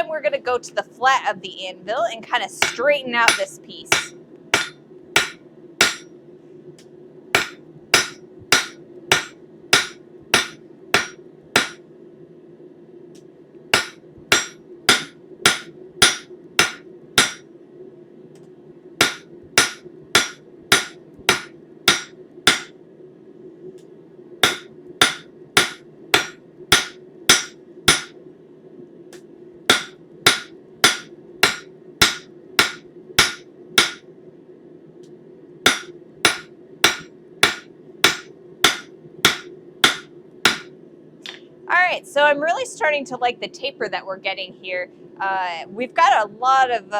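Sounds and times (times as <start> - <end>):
low hum: 0.0 - 46.9
hammer striking steel on anvil: 2.6 - 6.1, 7.4 - 11.8, 13.8 - 17.4, 19.0 - 22.7, 24.4 - 28.2, 29.7 - 34.0, 35.7 - 40.7.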